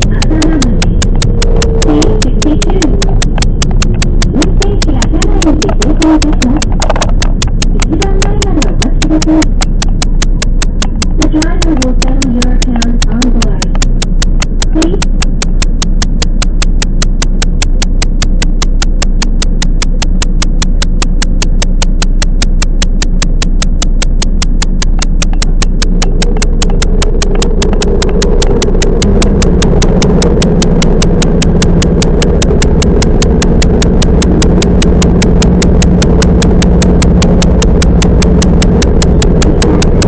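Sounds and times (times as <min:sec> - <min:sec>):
train car rumble: 0:00.0 - 0:09.6, 0:11.2 - 0:13.8
low motor hum: 0:00.0 - 0:40.0
rapid clicking of train: 0:00.0 - 0:40.0.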